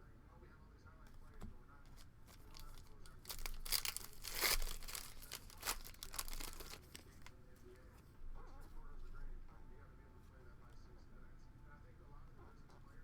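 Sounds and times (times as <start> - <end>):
cards rustling: 1.3 - 7.3
card pack wrapper tearing: 2.0 - 7.3.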